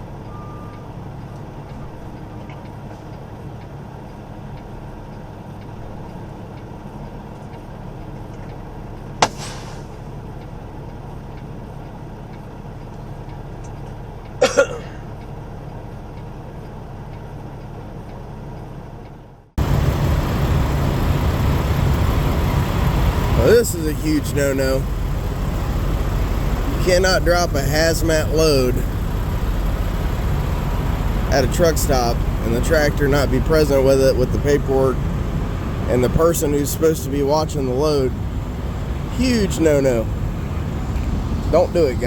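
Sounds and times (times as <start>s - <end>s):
brief air hiss: 9.2s - 10.0s
diesel truck engine idling: 19.6s - 42.0s.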